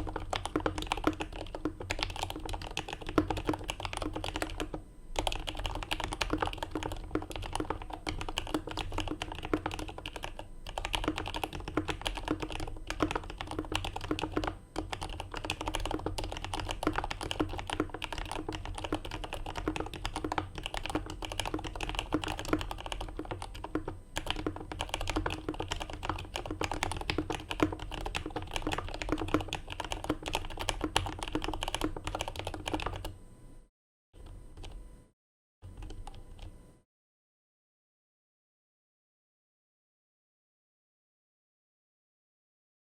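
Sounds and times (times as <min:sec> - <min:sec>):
fast mechanical keyboard typing: 0:00.0 - 0:33.2, 0:35.8 - 0:36.5.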